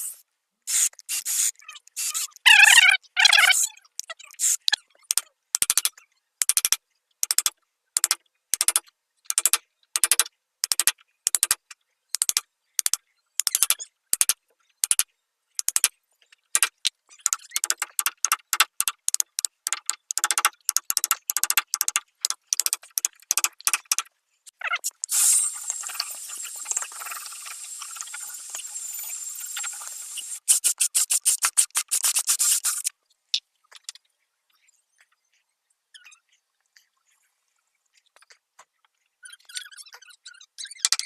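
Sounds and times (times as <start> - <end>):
scraping strokes on wood: 25.1 - 32.9.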